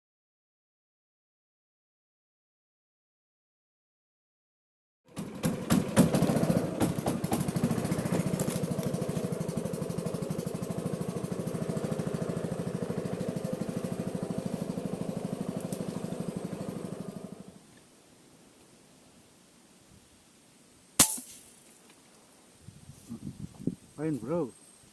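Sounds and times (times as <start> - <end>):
boat engine puttering: 5.1 - 17.6.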